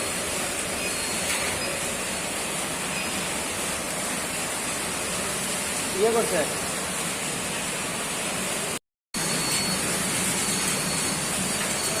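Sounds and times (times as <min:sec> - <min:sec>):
air conditioner blower fan: 0:00.0 - 0:12.0.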